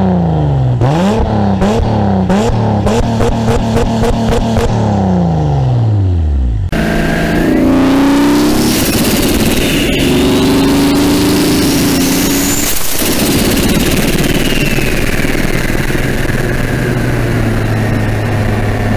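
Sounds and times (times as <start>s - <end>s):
car engine revving: 0.0s - 18.9s
turbo whistle: 8.2s - 15.8s.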